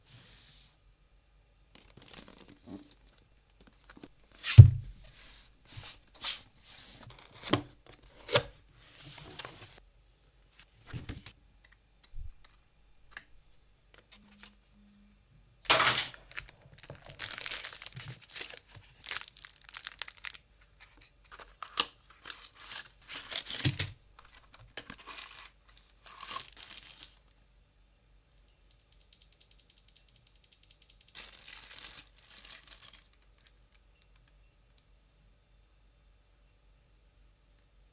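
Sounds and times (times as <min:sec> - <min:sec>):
packaging tearing and crinkling: 0:15.7 - 0:27.2, 0:31.1 - 0:33.5.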